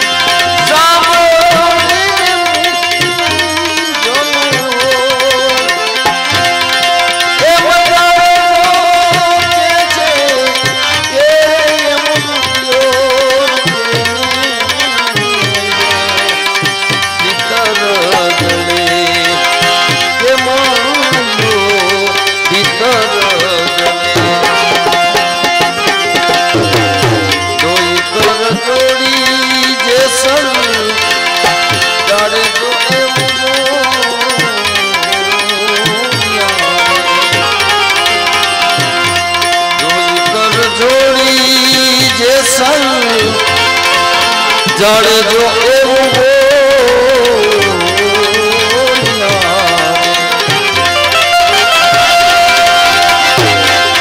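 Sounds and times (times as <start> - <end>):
wavering sliding melody: 13.5 - 41.0
hand drum beat: 23.8 - 28.3, 52.9 - 54.0.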